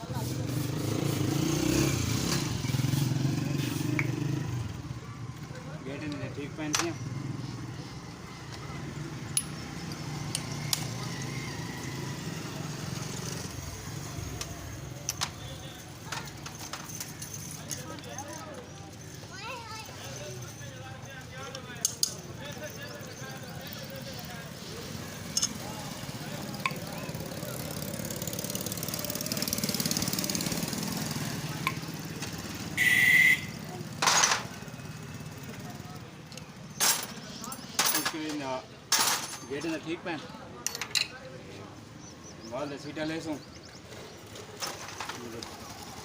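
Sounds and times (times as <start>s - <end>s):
road traffic hum: 0.0s - 46.0s
motorcycle engine running: 22.6s - 36.0s.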